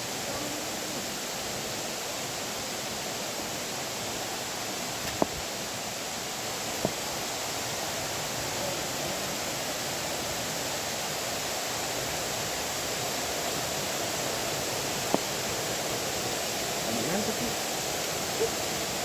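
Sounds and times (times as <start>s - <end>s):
waterfall roaring: 0.0s - 19.0s.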